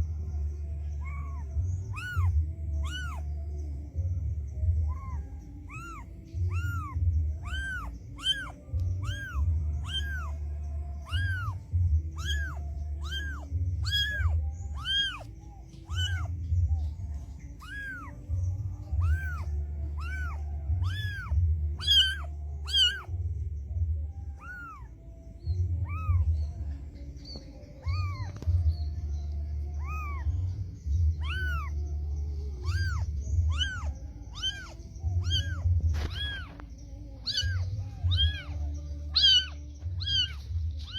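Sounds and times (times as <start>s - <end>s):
background music with bass: 0.0s - 40.9s
cat meowing: 1.0s - 3.4s, 4.8s - 16.8s, 17.6s - 23.2s, 24.3s - 24.9s, 25.8s - 26.4s, 27.8s - 28.6s, 29.7s - 30.5s, 31.1s - 31.8s, 32.6s - 36.6s, 37.2s - 40.9s.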